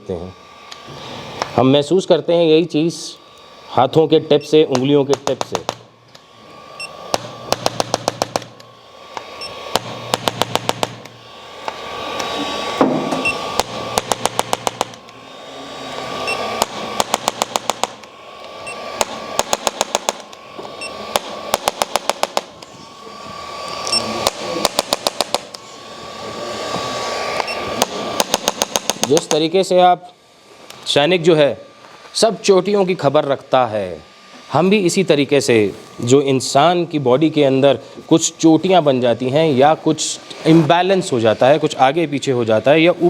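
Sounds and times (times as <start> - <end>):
steady high tone: 0.0 - 40.2
hiss: 0.1 - 4.3, 5.1 - 41.0
adjusting instrument rapid clicks: 4.7 - 6.3, 7.1 - 12.4, 13.4 - 15.2, 16.5 - 20.5, 21.1 - 22.7, 23.8 - 25.6, 27.4 - 29.4.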